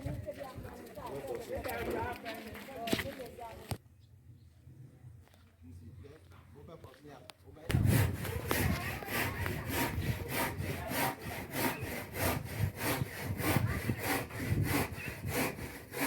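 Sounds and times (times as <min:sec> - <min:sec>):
hand saw cutting wood: 0:07.7 - 0:16.0.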